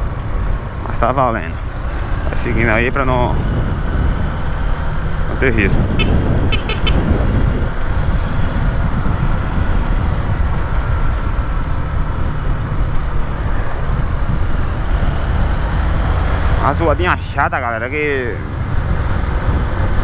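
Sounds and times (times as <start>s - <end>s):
wind on microphone: 1.7s - 16.6s, 18.0s - 20.0s
motorcycle engine running: 3.0s - 15.8s.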